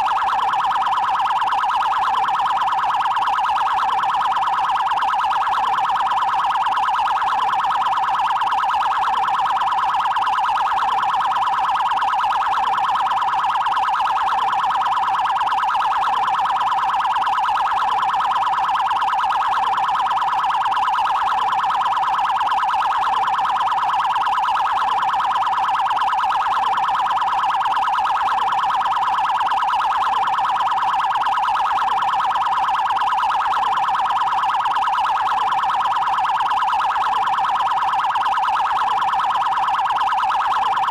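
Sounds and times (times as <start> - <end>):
electronic siren fast warble: 0.0 - 40.9.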